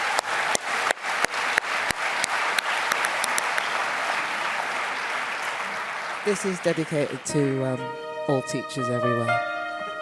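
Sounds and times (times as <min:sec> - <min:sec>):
loud close claps: 0:00.0 - 0:07.3
audience applauding: 0:00.0 - 0:07.9.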